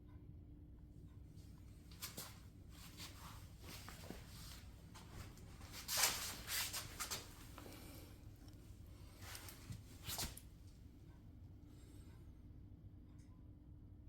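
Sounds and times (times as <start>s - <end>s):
rubbing and scuffing handling noises: 1.9s - 8.2s, 9.0s - 10.5s.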